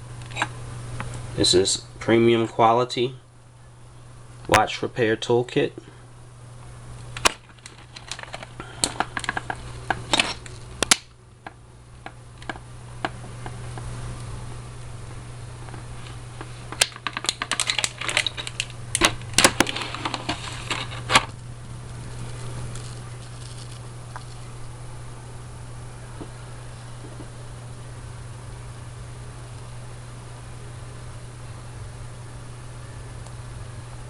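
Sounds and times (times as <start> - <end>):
steady low hum: 0.0 - 34.0
small tools rattling in plastic case: 7.5 - 10.6, 16.8 - 21.2, 22.3 - 24.4.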